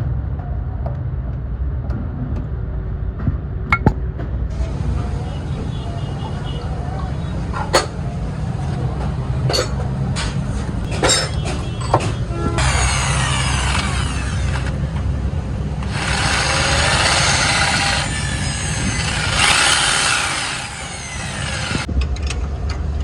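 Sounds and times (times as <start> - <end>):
power drill running: 12.6 - 14.9, 15.8 - 21.9.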